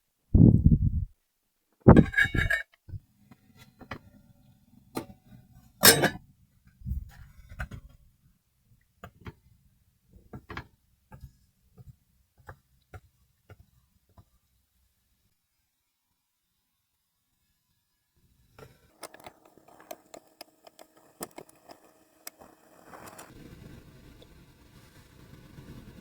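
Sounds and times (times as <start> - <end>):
taps and scrapes against pan: 1.9 - 2.6
utensil clattering: 5.8 - 6.2.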